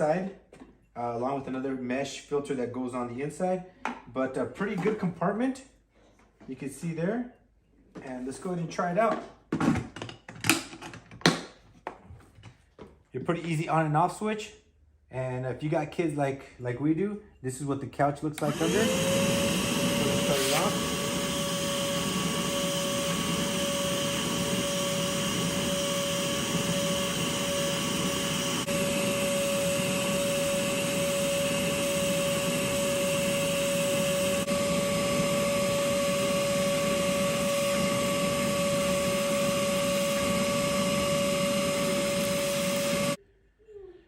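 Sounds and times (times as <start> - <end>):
vacuum cleaner running: 18.4 - 43.2.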